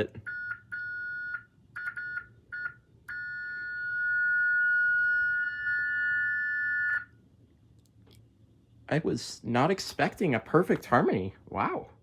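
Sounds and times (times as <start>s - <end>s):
security alarm sirens steady tone: 0.2s - 7.2s.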